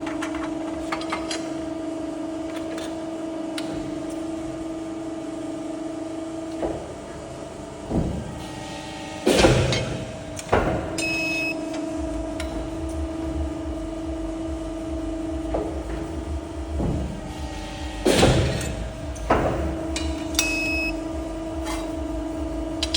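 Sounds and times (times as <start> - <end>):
machinery humming: 0.0 - 22.9
short electronic beep: 20.4 - 21.0.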